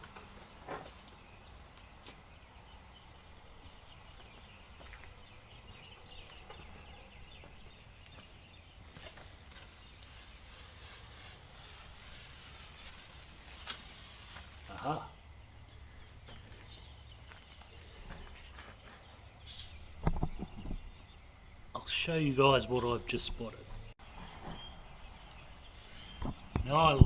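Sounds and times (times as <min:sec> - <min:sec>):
short hissy bursts: 0:09.7 - 0:14.9.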